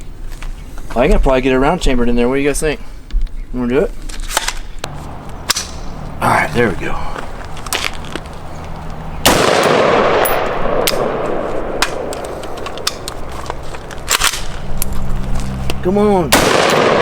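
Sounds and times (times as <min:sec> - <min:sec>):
rifle shots: 0:09.2 - 0:13.1, 0:16.3 - 0:17.0.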